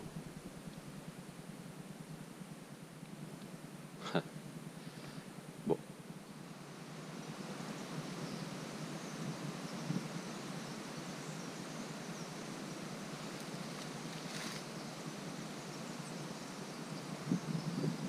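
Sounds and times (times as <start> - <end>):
short rustle: 13.5 - 14.7.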